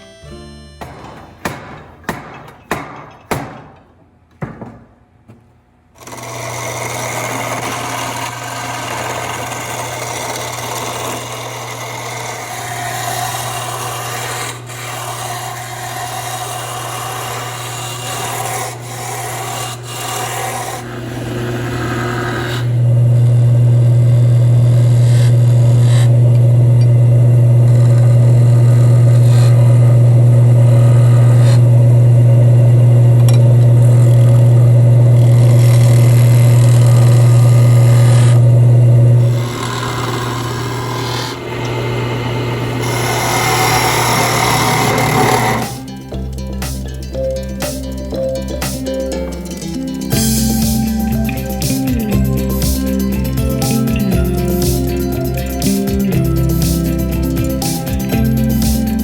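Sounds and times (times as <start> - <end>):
sharp knocks: 0.8 - 5.6
lathe motor hum: 6.0 - 59.0
tool scraping spinning wood: 6.0 - 59.0.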